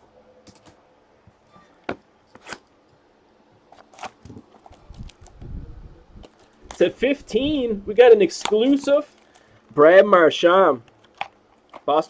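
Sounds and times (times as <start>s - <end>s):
trading cards rustling: 3.7s - 5.4s, 6.2s - 9.9s.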